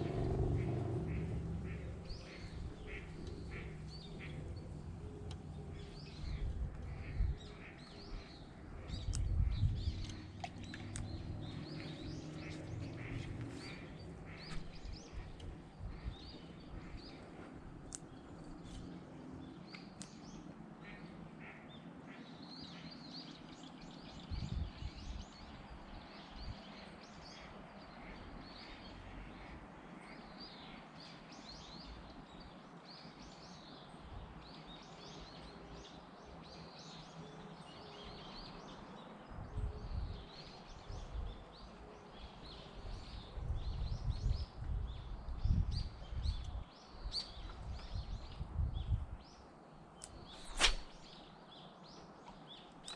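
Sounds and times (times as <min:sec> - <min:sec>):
small birds chirping: 0:00.0 - 0:22.1, 0:39.8 - 0:52.9.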